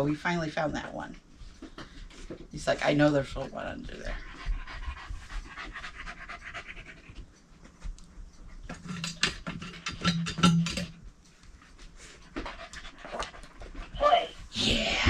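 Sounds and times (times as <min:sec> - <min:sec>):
dog panting: 0:03.1 - 0:08.8, 0:11.5 - 0:14.0.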